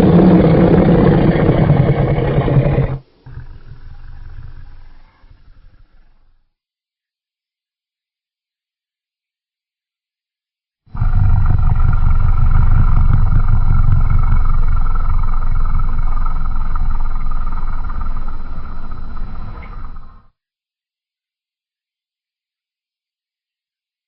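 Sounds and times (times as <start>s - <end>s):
long deep monster roar: 0.0s - 6.2s, 10.9s - 20.3s.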